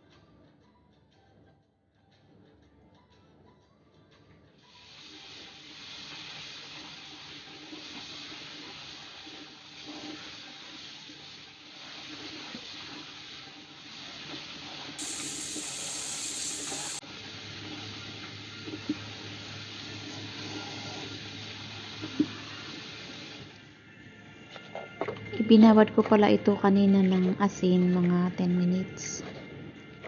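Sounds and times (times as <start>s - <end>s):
tap water running into sink: 15.0s - 17.0s.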